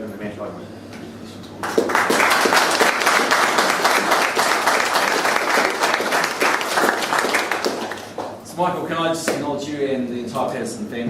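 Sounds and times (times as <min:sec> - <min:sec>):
audience applauding: 0:01.6 - 0:08.4.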